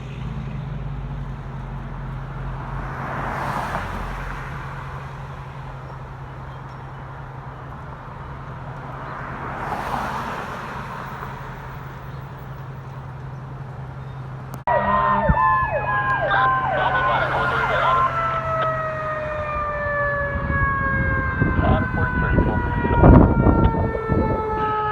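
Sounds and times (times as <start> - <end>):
road noise: 0.0 - 24.9
emergency vehicle siren wailing: 14.6 - 24.9.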